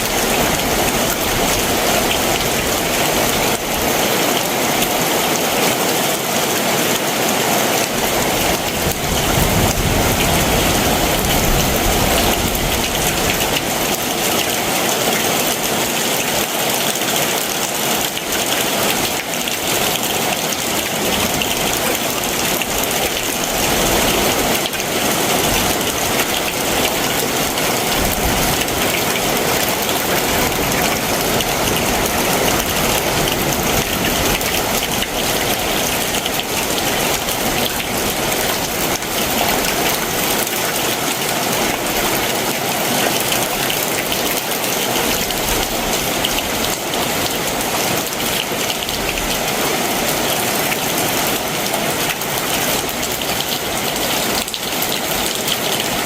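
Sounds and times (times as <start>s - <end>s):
heavy rain downpour: 0.0s - 56.0s
rain pattering on surfaces: 0.0s - 56.0s.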